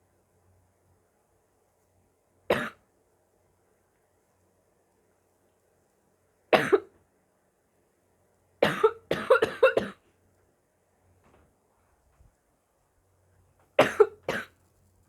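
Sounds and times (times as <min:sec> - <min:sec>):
person coughing harshly: 0:02.5 - 0:02.8, 0:06.6 - 0:06.9, 0:08.6 - 0:10.0, 0:13.8 - 0:14.5.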